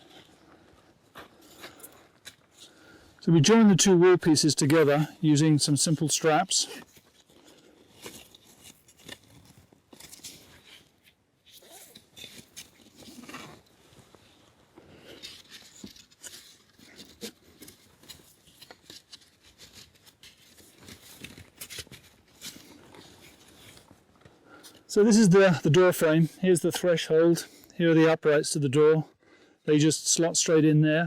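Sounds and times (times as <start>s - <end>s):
straps rustling and clicking: 4.6s - 25.2s.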